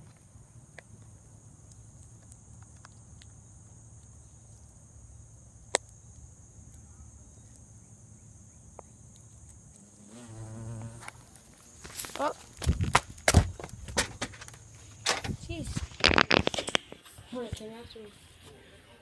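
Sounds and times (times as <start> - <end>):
hornet crunching clicks: 0.0 - 4.8, 5.6 - 7.7, 8.6 - 17.0
low buzz: 9.8 - 12.1.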